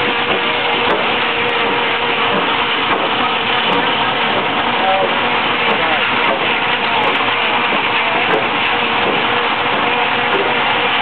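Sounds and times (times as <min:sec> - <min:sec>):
sawmill machinery running: 0:00.0 - 0:11.0.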